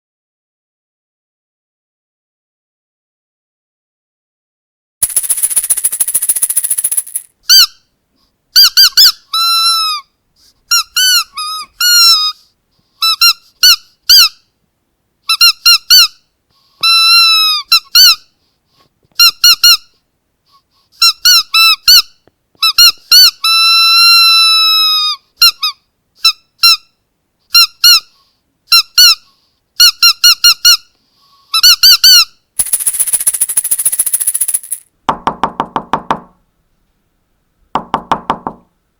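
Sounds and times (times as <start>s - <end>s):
squeaky dog toy squeaks: 7.5s - 7.8s, 8.6s - 10.0s, 10.7s - 12.4s, 13.0s - 14.4s, 15.3s - 16.1s, 16.8s - 18.2s, 19.2s - 19.9s, 21.0s - 26.9s, 28.7s - 29.2s, 29.8s - 30.8s, 31.5s - 32.8s.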